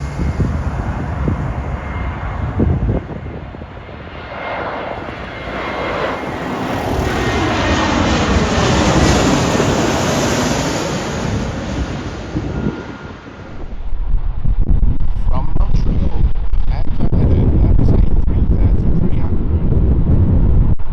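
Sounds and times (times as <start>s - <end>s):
jet plane passing by: 0.0s - 14.6s.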